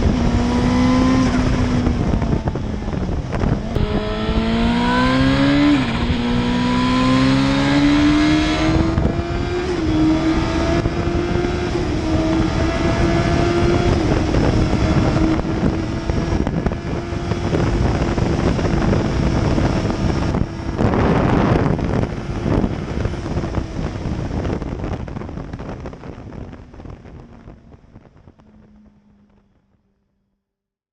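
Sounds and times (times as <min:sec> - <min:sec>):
loud rush of noise: 0:00.0 - 0:29.9
motorcycle engine revving: 0:00.0 - 0:30.0.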